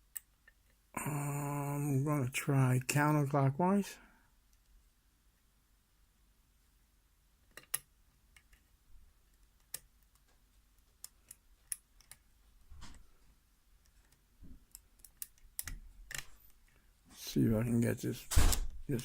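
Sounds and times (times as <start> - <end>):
lock pick metallic clicks: 14.7 - 16.4.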